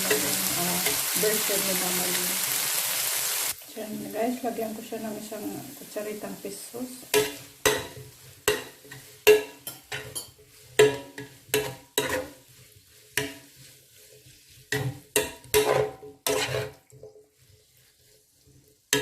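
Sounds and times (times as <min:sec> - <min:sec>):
faint sizzle: 0:00.0 - 0:19.0
utensil scraping a metal pan: 0:07.1 - 0:19.0.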